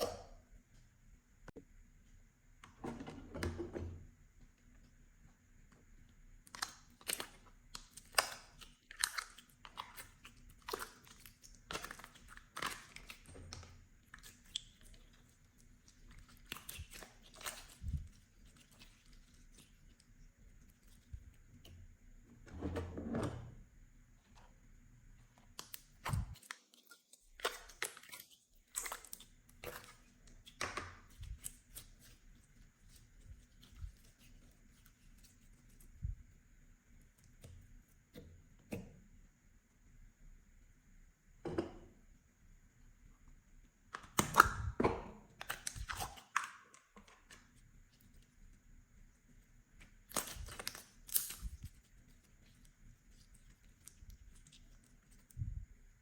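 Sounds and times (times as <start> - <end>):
slime squish: 6.4 - 21.8, 25.4 - 38.8, 44.0 - 55.5
sticky slime crackles and clicks: 50.0 - 51.8.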